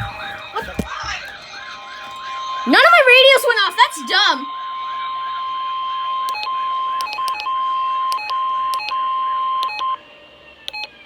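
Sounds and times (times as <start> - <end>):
steady high alarm beep: 2.4 - 10.0.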